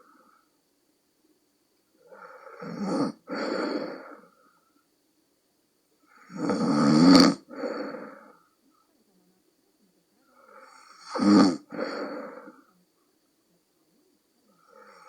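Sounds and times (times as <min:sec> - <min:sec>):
woman snoring loudly: 0:02.1 - 0:04.2, 0:06.1 - 0:08.2, 0:10.4 - 0:12.5, 0:14.6 - 0:15.0.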